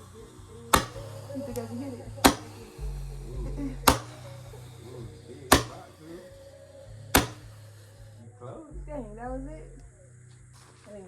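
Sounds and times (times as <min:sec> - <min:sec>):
roman candle pops: 0:00.7 - 0:02.7, 0:03.9 - 0:04.3, 0:05.5 - 0:06.2, 0:07.1 - 0:07.8.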